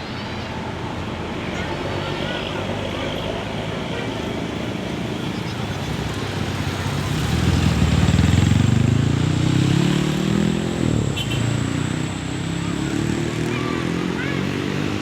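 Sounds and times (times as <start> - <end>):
large vehicle engine accelerating: 4.9 - 15.0.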